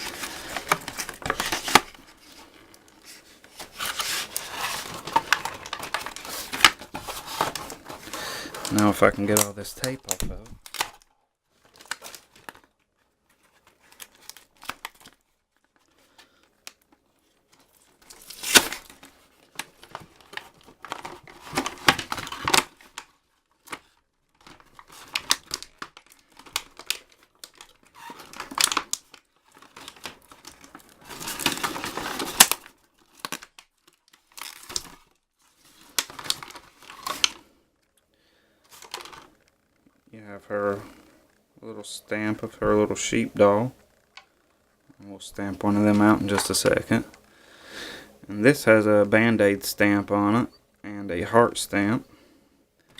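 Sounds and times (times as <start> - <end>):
packaging crinkling: 0.0 - 38.0, 38.6 - 39.6
tape peeling and tearing: 18.1 - 18.9.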